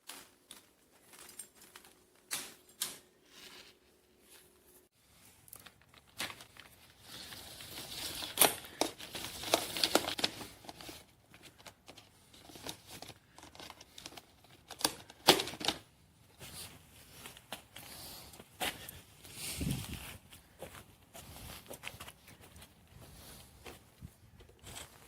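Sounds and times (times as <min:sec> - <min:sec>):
rustling: 0:00.0 - 0:25.0
clicks and knocks of handling: 0:08.4 - 0:15.8.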